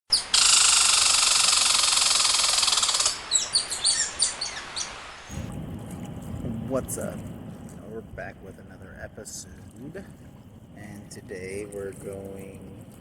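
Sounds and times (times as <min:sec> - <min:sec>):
bird buzzing trill: 0:00.1 - 0:05.0
high bird chirps: 0:00.1 - 0:05.1.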